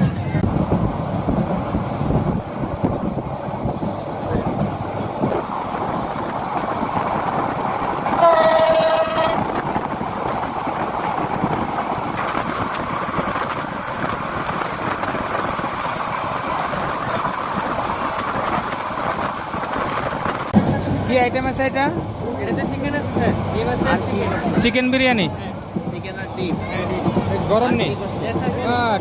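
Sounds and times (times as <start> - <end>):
train rumbling and rattling: 0.0 - 29.0
train horn blast: 8.1 - 9.6.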